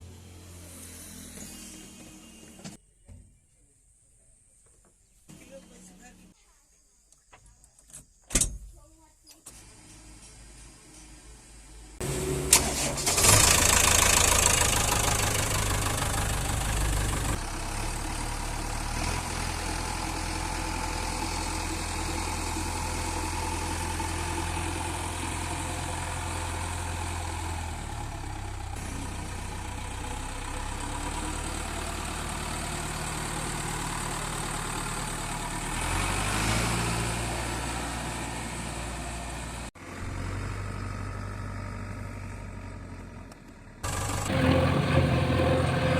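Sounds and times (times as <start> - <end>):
heavy diesel engine running: 12.0 - 42.8, 43.8 - 45.9.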